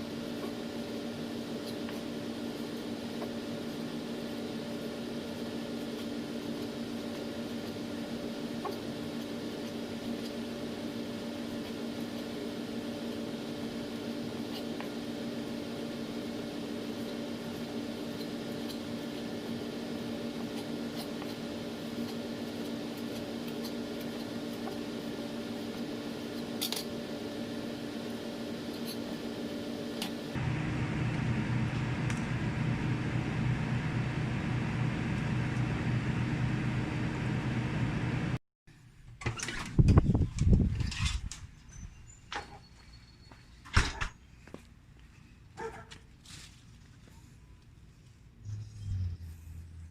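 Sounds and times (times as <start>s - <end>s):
steady background hum: 0.0s - 39.2s
loud deep hum: 30.4s - 38.4s.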